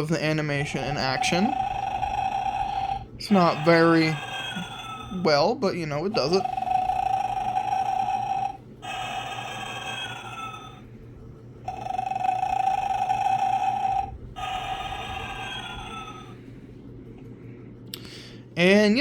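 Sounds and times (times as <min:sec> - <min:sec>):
toy snoring through tinny speaker: 0:00.0 - 0:05.5, 0:06.1 - 0:10.8, 0:11.7 - 0:16.3.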